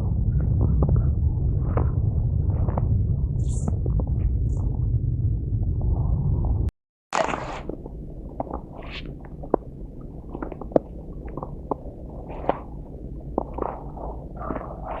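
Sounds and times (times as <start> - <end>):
low microphone rumble: 0.0 - 15.0
footsteps crunching in snow: 7.2 - 15.0.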